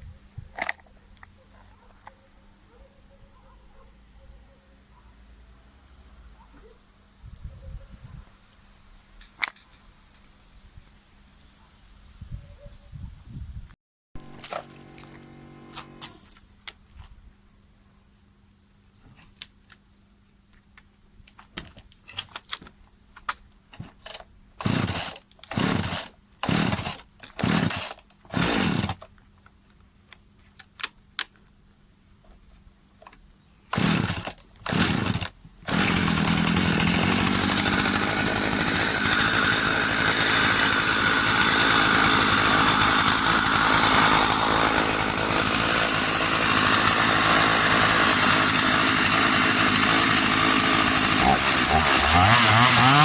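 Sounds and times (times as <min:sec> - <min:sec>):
chainsaw engine firing and running: 0:14.2 - 0:16.3, 0:24.1 - 0:29.1, 0:33.7 - 0:53.0
starter cord pulled: 0:14.2 - 0:16.4, 0:23.8 - 0:29.2, 0:33.7 - 0:49.5.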